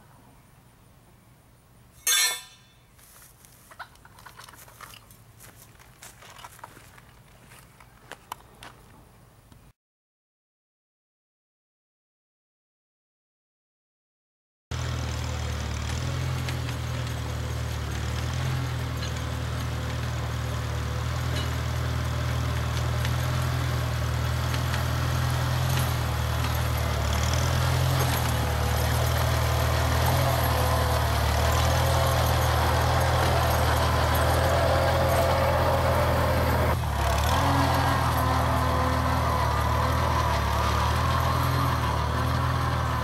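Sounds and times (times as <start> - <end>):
tractor engine droning: 14.7 - 43.0.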